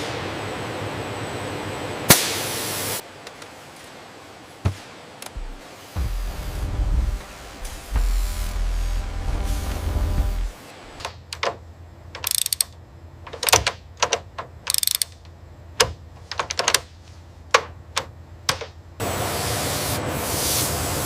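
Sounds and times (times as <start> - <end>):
high hiss: 4.9 - 11.0
sharp mechanical clicks: 10.4 - 15.4
ratcheting: 12.2 - 12.7.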